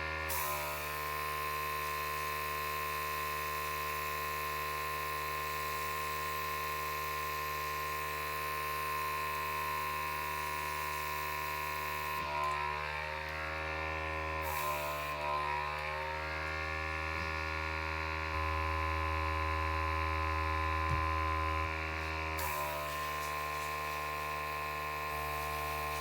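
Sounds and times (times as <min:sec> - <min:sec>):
electric air blower running: 0:00.0 - 0:26.0.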